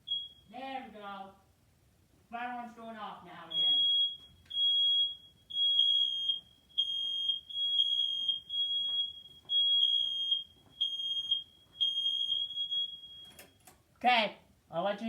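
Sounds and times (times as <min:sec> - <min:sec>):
smoke alarm beeping: 0:00.0 - 0:00.6, 0:03.4 - 0:13.8.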